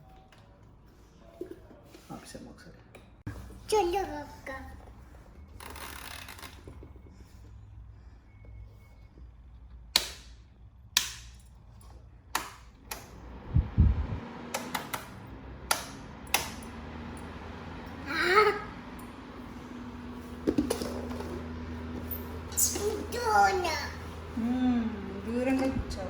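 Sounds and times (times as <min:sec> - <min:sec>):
fan motor humming: 0:12.8 - 0:26.0.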